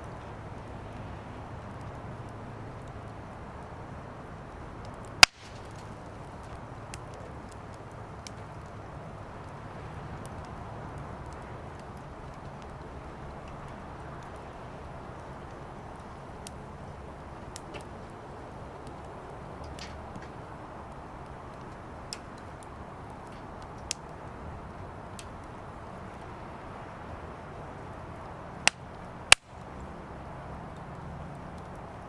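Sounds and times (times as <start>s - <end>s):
fire hissing and crackling: 0.0s - 32.0s
firewood pops: 4.8s - 8.8s, 18.7s - 24.2s, 28.6s - 29.9s.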